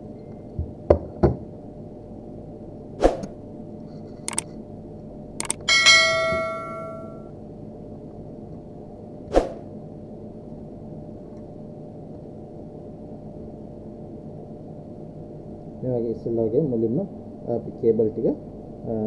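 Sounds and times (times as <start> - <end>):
sharp clicks: 5.4 - 5.7
metal tool clanging: 5.4 - 7.2.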